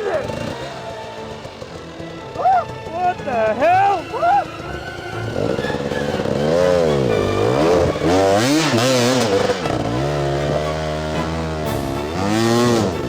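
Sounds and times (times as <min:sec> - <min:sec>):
dirt bike engine revving: 0:00.0 - 0:13.0.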